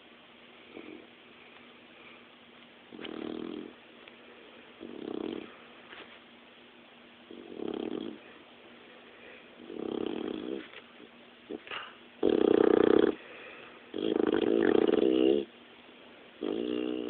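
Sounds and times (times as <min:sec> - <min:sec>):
dog snoring: 0:00.6 - 0:01.1, 0:02.9 - 0:03.8, 0:04.8 - 0:05.6, 0:07.3 - 0:08.4, 0:09.6 - 0:10.8, 0:11.5 - 0:15.5, 0:16.4 - 0:17.0.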